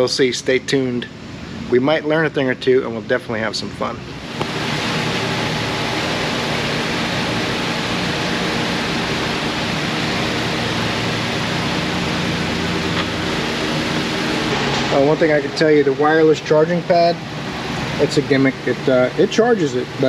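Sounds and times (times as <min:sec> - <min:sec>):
steady rushing noise: 0:04.1 - 0:20.0.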